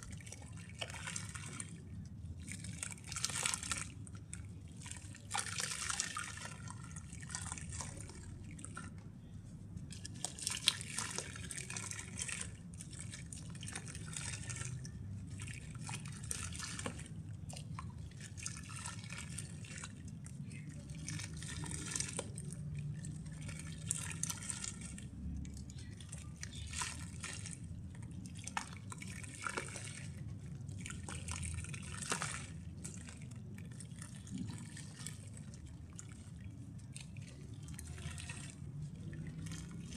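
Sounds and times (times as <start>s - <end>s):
mud crackling and fizzing in water: 9.8s - 39.9s
water drips: 9.8s - 39.9s.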